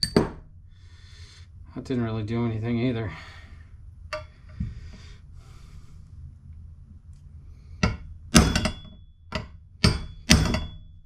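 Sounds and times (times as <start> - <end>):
hammer knocking on metal: 7.8 - 10.8.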